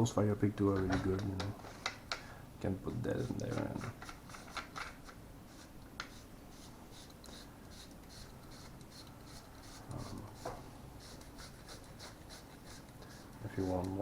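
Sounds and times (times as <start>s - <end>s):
soft rubbing and scraping: 3.1s - 14.0s.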